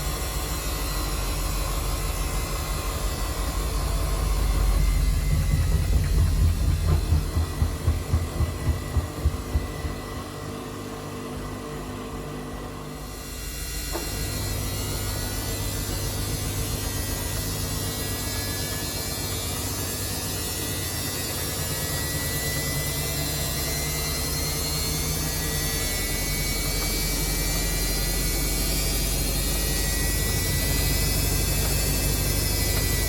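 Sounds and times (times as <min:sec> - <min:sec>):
washing machine motor humming: 0:00.0 - 0:33.0.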